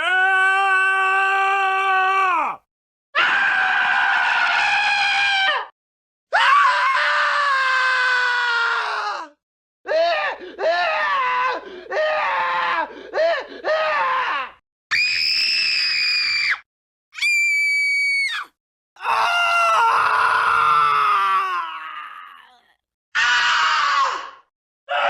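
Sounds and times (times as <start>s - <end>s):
person screaming: 0.0s - 2.6s, 18.2s - 24.3s.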